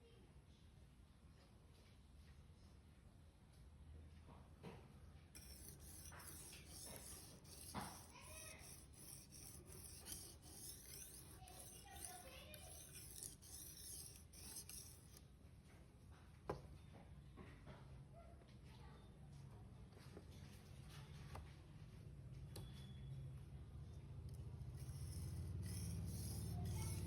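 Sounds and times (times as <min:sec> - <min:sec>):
knife scraping on sharpener: 0:05.4 - 0:15.2, 0:24.7 - 0:27.0.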